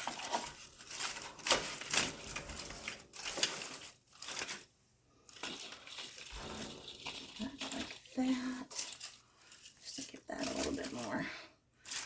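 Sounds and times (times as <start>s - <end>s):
greenery rustling and crinkling: 0.0s - 12.0s.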